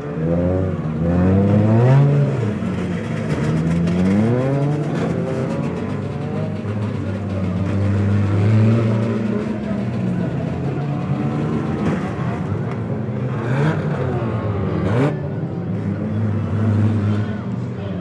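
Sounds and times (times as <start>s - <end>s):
racing car engines revving: 0.0s - 18.0s.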